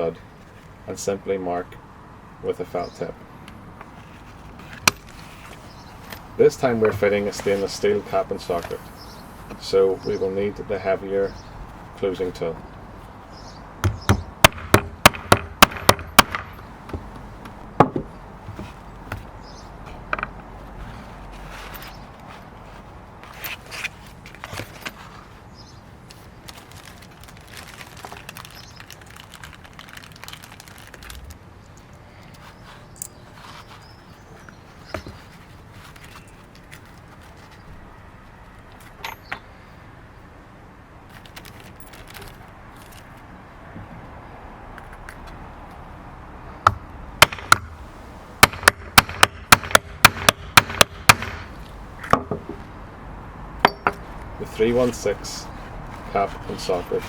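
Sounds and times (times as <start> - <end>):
hammer striking metal tool: 53.6 - 54.0.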